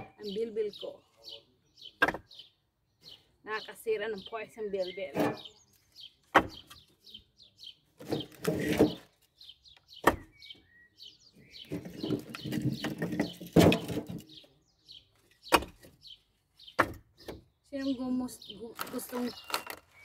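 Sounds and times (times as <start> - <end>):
small birds chirping: 0.0 - 20.0
firewood logs knocking together: 2.0 - 2.4, 6.2 - 6.8, 8.0 - 9.3, 10.0 - 10.4, 11.6 - 14.5, 15.3 - 16.0, 16.7 - 17.5, 18.8 - 20.0
scraping and rustling wood: 7.9 - 10.2, 11.4 - 14.5, 18.6 - 20.0.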